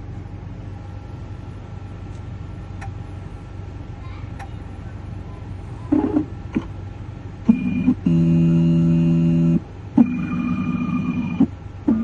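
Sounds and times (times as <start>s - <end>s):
low mechanical hum with whine: 0.0s - 12.0s.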